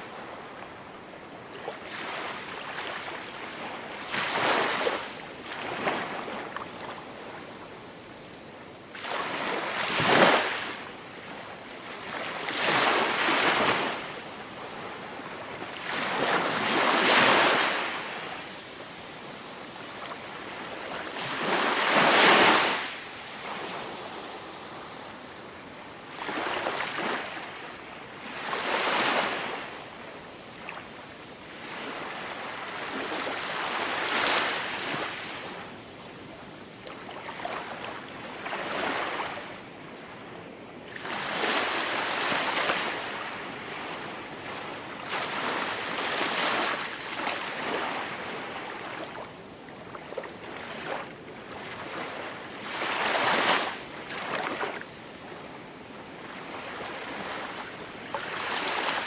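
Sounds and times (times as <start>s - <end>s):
ocean waves breaking on beach: 12.0s - 35.6s, 50.3s - 59.0s.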